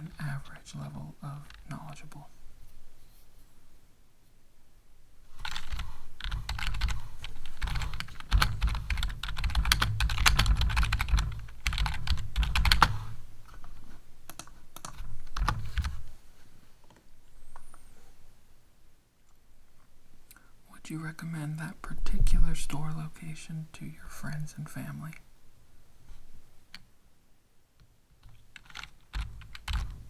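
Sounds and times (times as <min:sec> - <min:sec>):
typing on keyboard: 0:05.4 - 0:13.0, 0:28.2 - 0:30.0.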